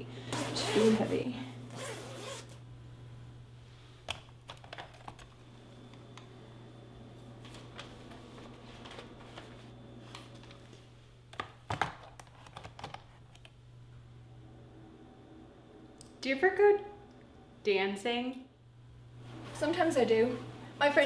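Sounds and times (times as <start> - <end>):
low room hum: 0.0 - 21.0.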